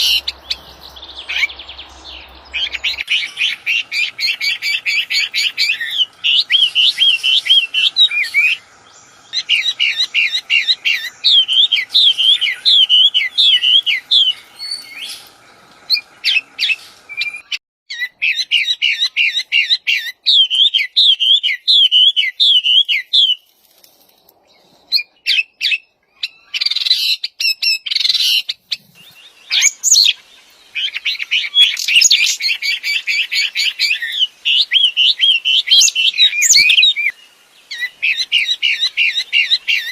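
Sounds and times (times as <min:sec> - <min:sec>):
songbird whistling rapid notes: 0:00.0 - 0:15.3.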